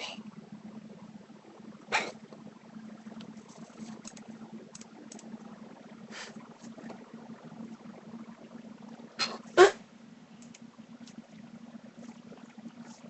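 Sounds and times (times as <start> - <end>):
steady low hum: 0.0 - 13.0
faint clicks: 3.1 - 5.4, 10.4 - 11.4
person hiccuping: 9.2 - 9.8.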